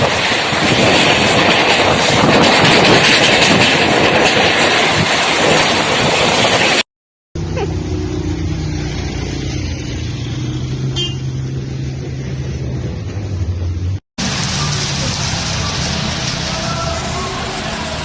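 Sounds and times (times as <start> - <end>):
gusting wind: 0.0 - 6.8, 7.4 - 15.2
heavy rain: 0.0 - 6.8, 13.8 - 18.0.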